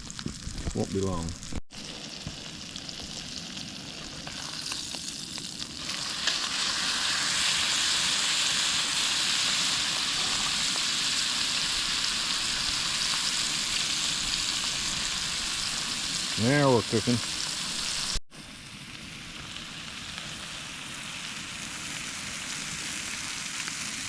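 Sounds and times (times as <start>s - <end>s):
small crackles: 0.0s - 7.2s
meat sizzling in a pan: 0.0s - 24.0s.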